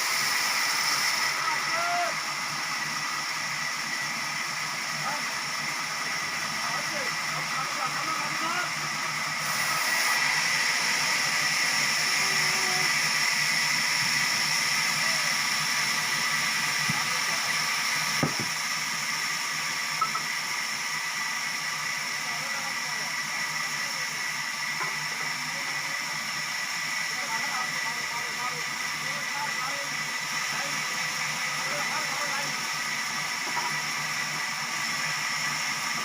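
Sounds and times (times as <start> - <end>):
sawmill machinery hiss and whine: 0.0 - 36.0
sharp knock: 18.2 - 18.5.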